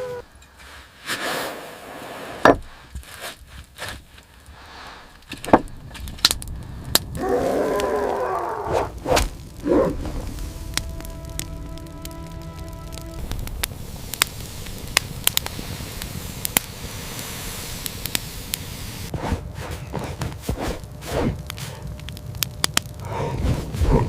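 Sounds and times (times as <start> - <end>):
sharp knocks and cracks: 5.2 - 7.2
steady held tones: 8.9 - 19.1.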